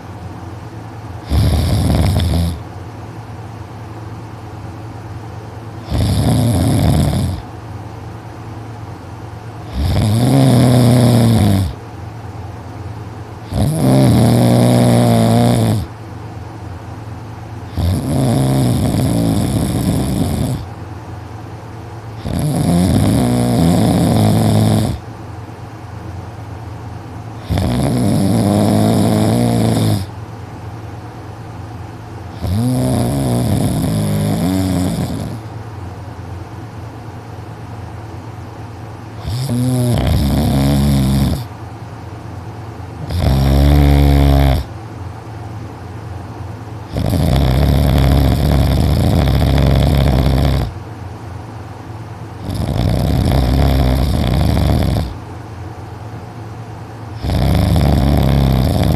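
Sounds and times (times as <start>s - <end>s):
person snoring loudly: 1.2s - 2.6s, 5.8s - 7.5s, 9.6s - 11.8s, 13.5s - 15.9s, 17.7s - 20.7s, 22.2s - 25.0s, 27.4s - 30.1s, 32.3s - 35.5s, 39.2s - 41.5s, 43.0s - 44.7s, 46.9s - 50.8s, 52.4s - 55.2s, 57.2s - 58.9s.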